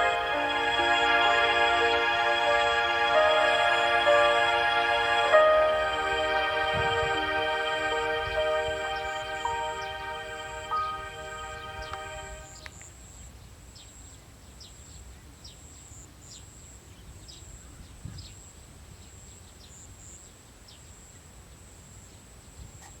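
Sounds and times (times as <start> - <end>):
background music: 0.0 - 12.6.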